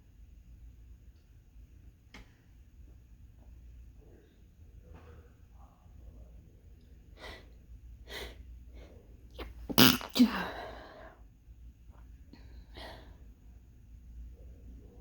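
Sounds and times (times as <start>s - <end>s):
person sneezing: 9.7s - 10.7s.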